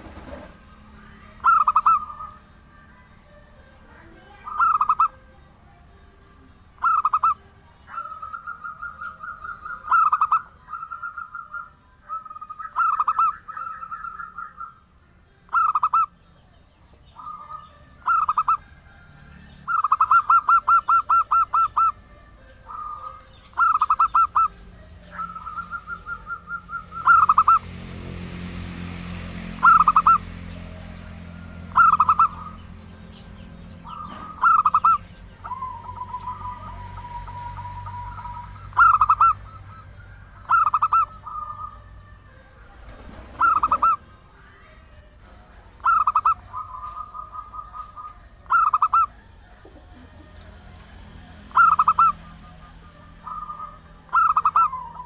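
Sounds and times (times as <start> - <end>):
dove cooing: 1.3 - 3.2, 4.2 - 5.2, 6.8 - 14.7, 15.5 - 16.1, 17.1 - 22.1, 22.7 - 27.6, 29.6 - 30.3, 31.6 - 32.6, 33.8 - 50.8, 51.5 - 55.0.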